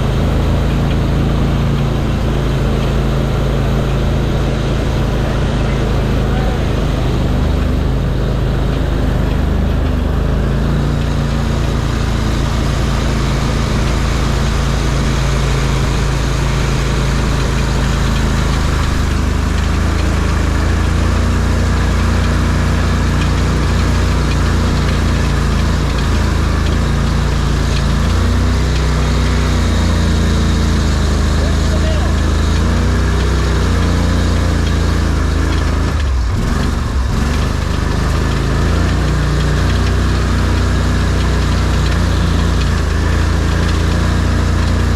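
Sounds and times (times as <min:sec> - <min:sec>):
off-road vehicle engine running: 0:00.0 - 0:44.9.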